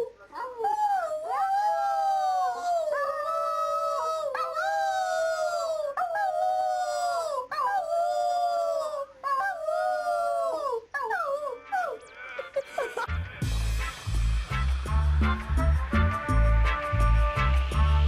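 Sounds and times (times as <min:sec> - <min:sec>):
dog howling: 0:00.0 - 0:12.0.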